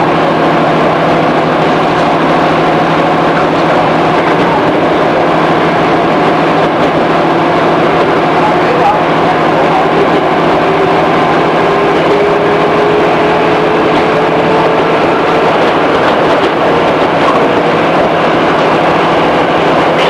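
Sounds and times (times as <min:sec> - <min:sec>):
train wheels rumbling on rails: 0:00.0 - 0:20.0
traction motor whine rising: 0:09.2 - 0:19.6.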